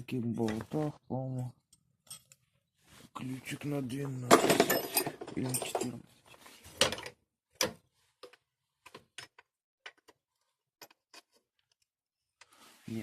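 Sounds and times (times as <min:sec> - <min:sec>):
metal spanners clinking: 0:01.7 - 0:02.4, 0:04.3 - 0:06.0.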